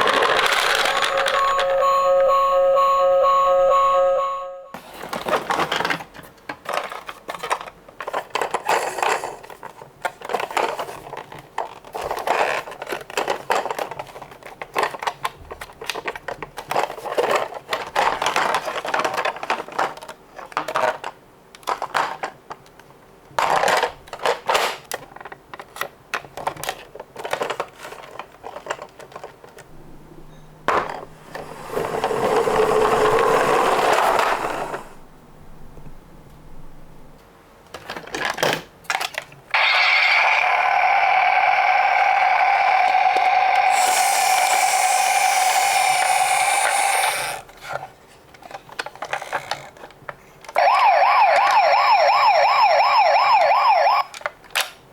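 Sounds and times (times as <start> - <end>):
toy cars rattling down a slope: 0.0 - 1.7, 6.7 - 21.1, 31.4 - 35.0, 39.6 - 47.8, 48.4 - 50.0.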